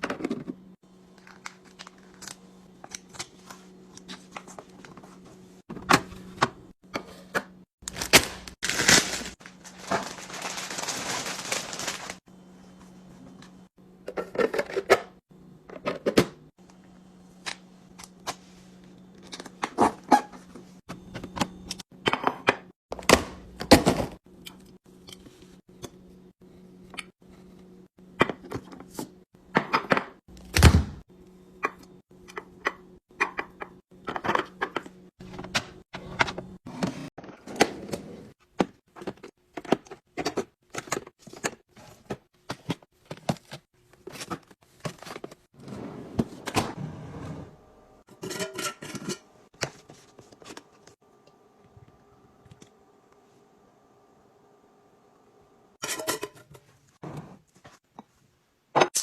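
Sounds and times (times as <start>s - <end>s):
packages knocking and rustling: 7.8s - 12.2s.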